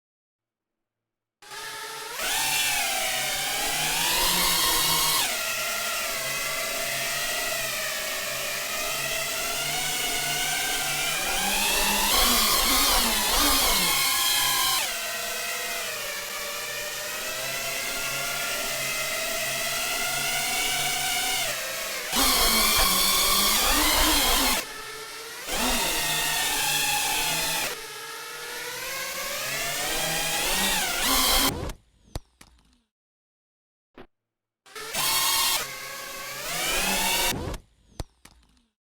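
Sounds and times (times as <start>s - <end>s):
quadcopter motors whining: 1.4s - 31.8s, 34.7s - 37.6s
drone motors whining: 11.2s - 15.0s, 21.4s - 31.8s.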